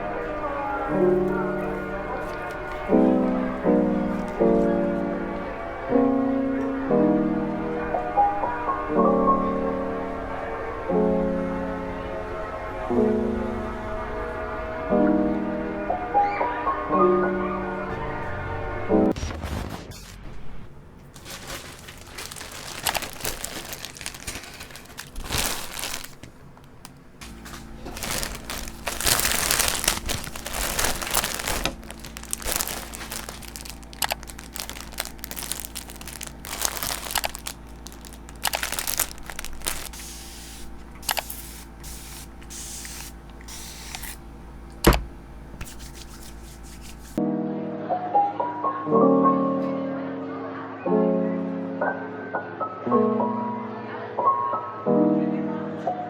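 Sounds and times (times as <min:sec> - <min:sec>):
packaging crinkling and tearing: 0:00.8 - 0:03.0, 0:03.6 - 0:04.8, 0:21.0 - 0:44.2
steady low hum: 0:20.1 - 0:47.2.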